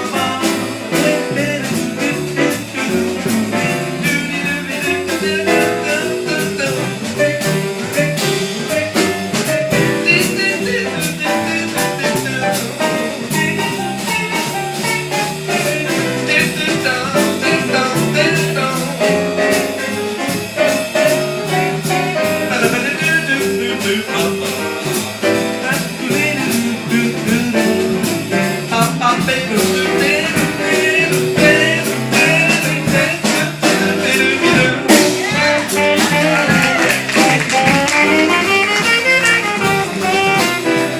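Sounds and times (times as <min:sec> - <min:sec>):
drums and cymbals: 0:00.0 - 0:40.9
jazz band playing: 0:00.0 - 0:40.9.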